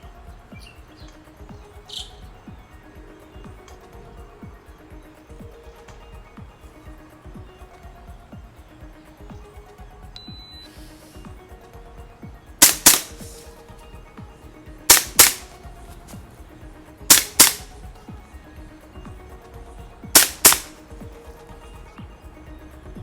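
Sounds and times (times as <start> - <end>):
quiet background music: 0.0 - 23.0
airsoft pistol shots: 12.6 - 13.5, 14.9 - 15.6, 17.1 - 17.7, 20.2 - 20.8.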